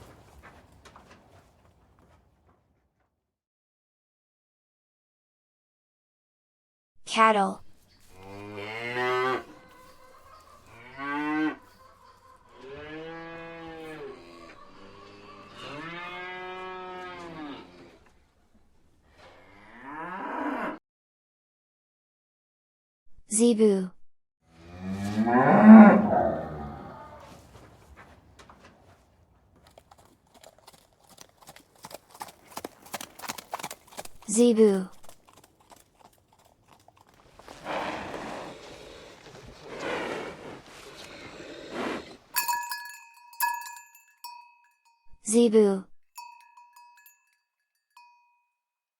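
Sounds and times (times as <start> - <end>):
hooves clopping: 0.0 - 3.1, 7.8 - 12.9, 27.1 - 44.5
cattle mooing: 8.1 - 18.1, 19.2 - 20.8, 24.5 - 28.7, 35.8 - 42.4.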